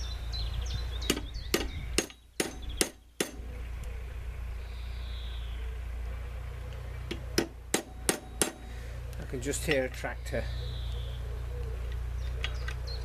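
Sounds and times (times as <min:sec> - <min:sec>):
distant tractor drone: 0:00.0 - 0:13.0
hammer striking metal punch: 0:01.1 - 0:03.4, 0:07.4 - 0:08.7.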